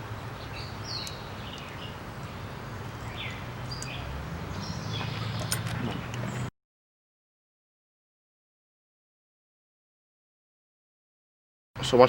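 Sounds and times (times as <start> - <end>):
small birds chirping: 0.0 - 6.5.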